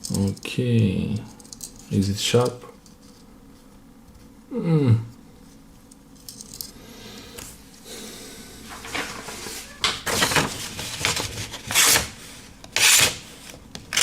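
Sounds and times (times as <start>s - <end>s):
knife blade scraping: 12.8s - 13.2s.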